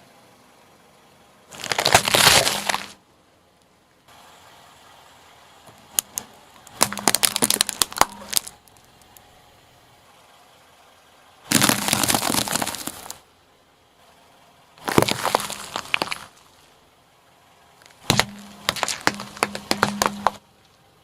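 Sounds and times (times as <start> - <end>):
car tyre crushing crunchy objects: 1.5 - 3.0, 5.7 - 9.3, 11.4 - 13.3, 14.8 - 20.9
sharp cracks and snaps: 1.5 - 3.0, 5.9 - 9.3.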